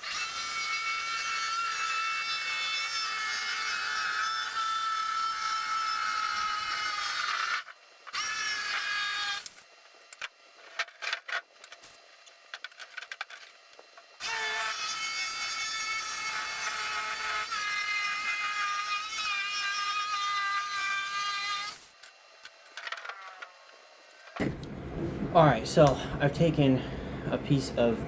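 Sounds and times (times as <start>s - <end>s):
jigsaw cutting a board: 0.0s - 9.6s, 14.2s - 22.0s
clicks and knocks: 24.4s - 26.0s.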